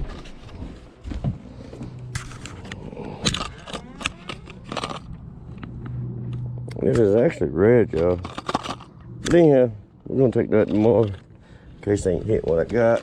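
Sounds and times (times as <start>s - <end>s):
steady low hum: 0.0s - 12.7s
packaging clicks taps and scrapes: 11.9s - 13.0s.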